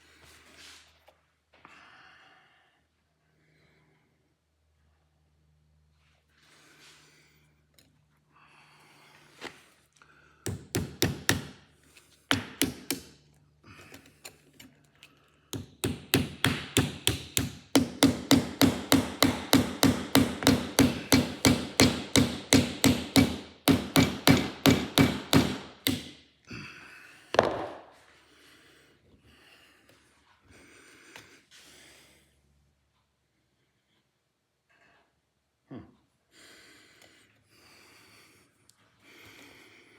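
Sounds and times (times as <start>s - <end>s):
hammer tapping on metal: 10.5s - 11.6s, 12.3s - 13.1s, 15.6s - 26.2s.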